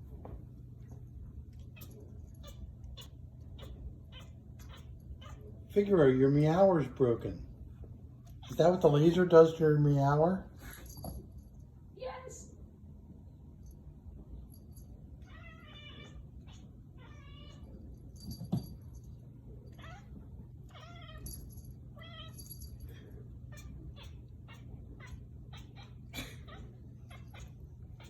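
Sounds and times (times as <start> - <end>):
kitten meowing: 1.7 - 5.5.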